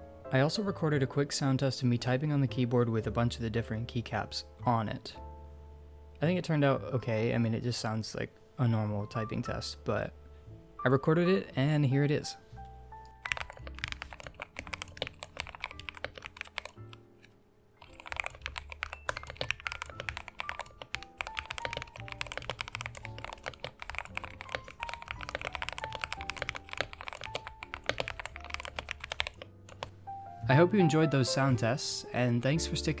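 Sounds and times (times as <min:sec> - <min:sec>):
background music: 0:00.0 - 0:33.0
mechanical keyboard typing: 0:13.1 - 0:17.0, 0:17.8 - 0:29.9.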